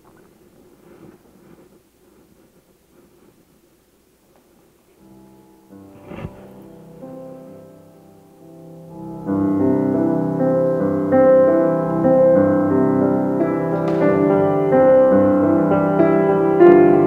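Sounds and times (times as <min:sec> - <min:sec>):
piano music: 0:05.0 - 0:17.0.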